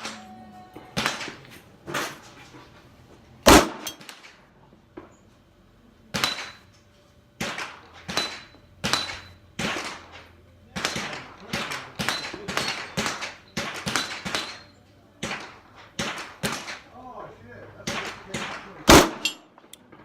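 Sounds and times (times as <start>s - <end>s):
pistol shots: 3.5s - 4.2s, 7.4s - 14.6s, 15.2s - 16.8s, 17.8s - 19.9s.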